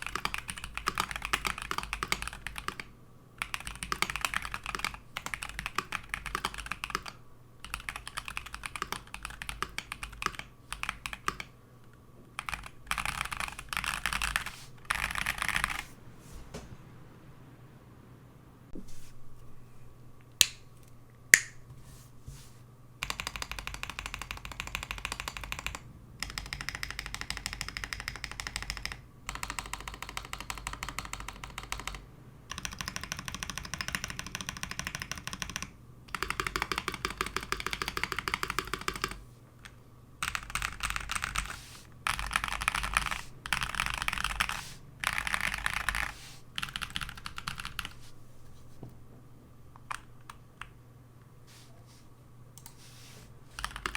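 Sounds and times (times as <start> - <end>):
mechanical keyboard typing: 0.0 - 11.5, 12.4 - 15.8, 23.0 - 39.2, 40.2 - 48.0, 53.6 - 53.9.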